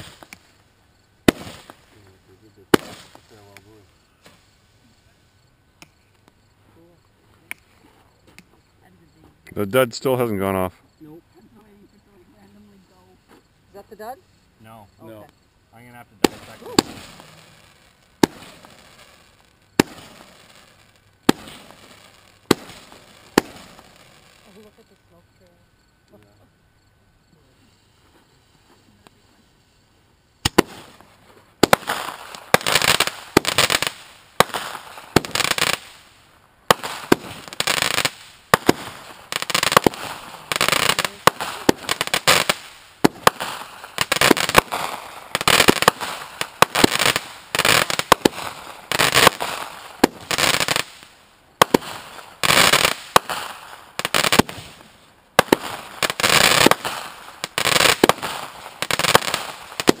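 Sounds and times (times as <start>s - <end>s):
fireworks bangs with crackle: 0.0s - 5.0s, 15.2s - 24.8s, 30.4s - 60.0s.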